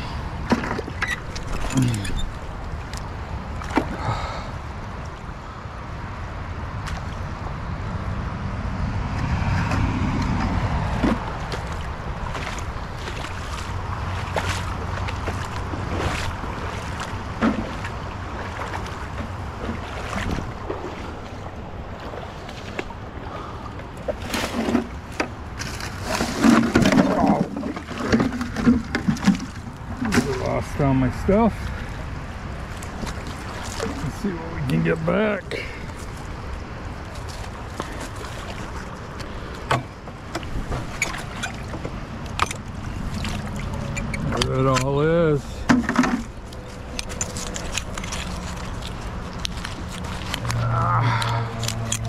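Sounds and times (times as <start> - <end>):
creek water flowing: 0.0 - 52.0
wind buffeting microphone: 6.8 - 24.0
knocks and clanks: 45.7 - 46.3.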